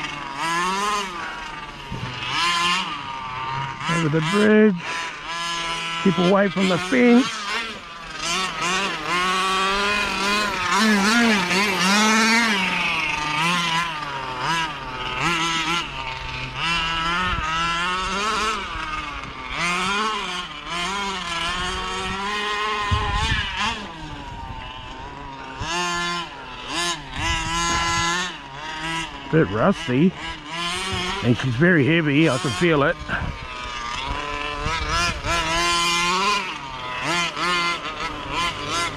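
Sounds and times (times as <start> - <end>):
small two-stroke engine revving: 0.0 - 38.9.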